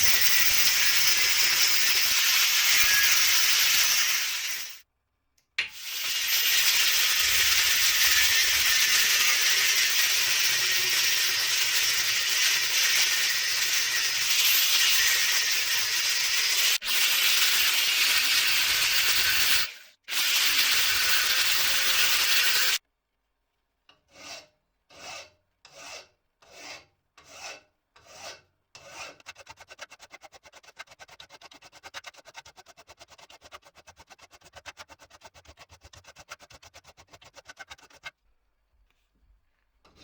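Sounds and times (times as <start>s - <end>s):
rasp rubbing on wood: 24.2s - 38.2s.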